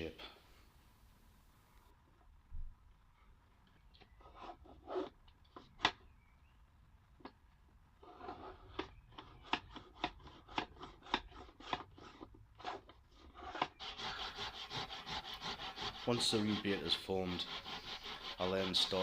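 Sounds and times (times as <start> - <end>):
hand tool scraping wood: 4.2 - 6.0, 8.0 - 19.0.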